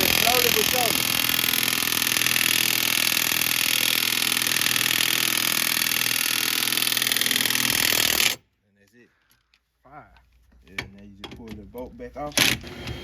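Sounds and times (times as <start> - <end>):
impact wrench rattling: 0.0 - 8.4.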